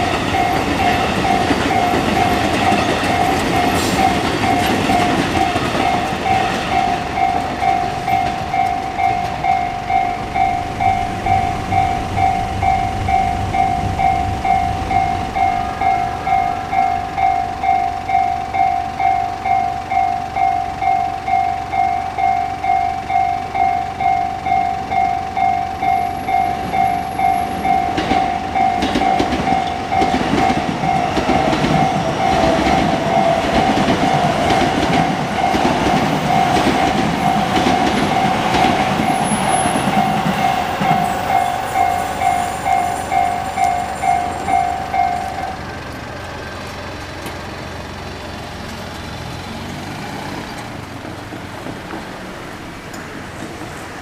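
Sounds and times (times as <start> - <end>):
level crossing bell ringing: 0.0 - 46.1
train rumble and wheel clatter: 0.0 - 54.0.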